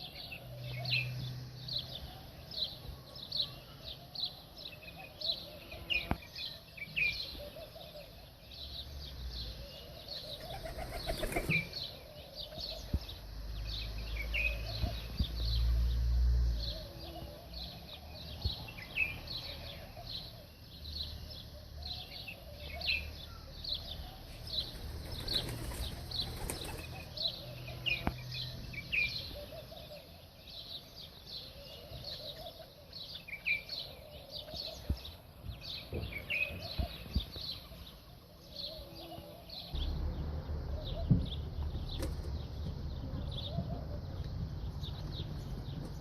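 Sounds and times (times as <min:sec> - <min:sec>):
small birds chirping: 0:00.0 - 0:46.0.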